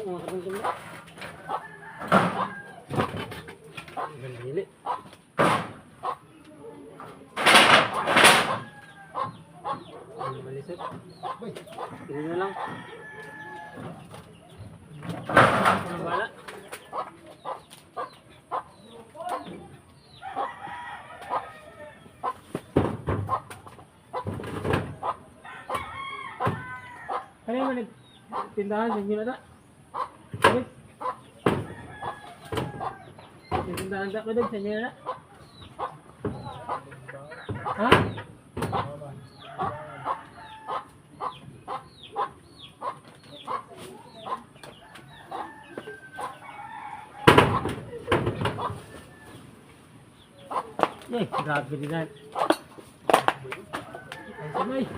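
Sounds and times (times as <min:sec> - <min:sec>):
chickens clucking: 0:00.0 - 0:54.9
rooster crowing: 0:01.4 - 0:03.0, 0:12.0 - 0:14.0, 0:20.2 - 0:22.1, 0:25.4 - 0:27.3, 0:31.6 - 0:33.2, 0:44.8 - 0:47.6, 0:53.8 - 0:54.9.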